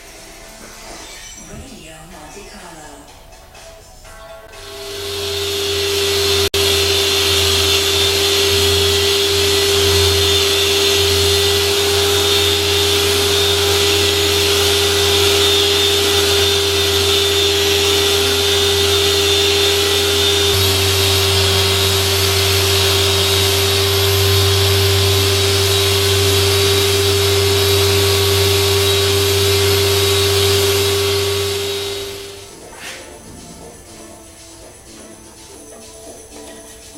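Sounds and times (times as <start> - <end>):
power tool whining: 4.6 - 32.5.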